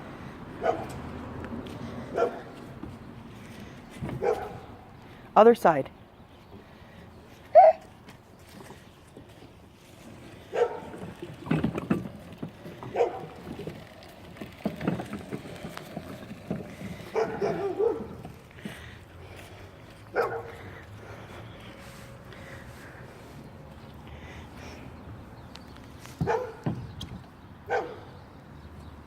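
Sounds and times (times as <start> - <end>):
dog barking: 0.6 - 0.9, 2.2 - 2.4, 4.2 - 4.6, 7.6 - 7.8, 10.5 - 10.9, 13.0 - 13.2, 17.2 - 18.1, 20.1 - 20.5, 26.2 - 26.6, 27.7 - 28.1.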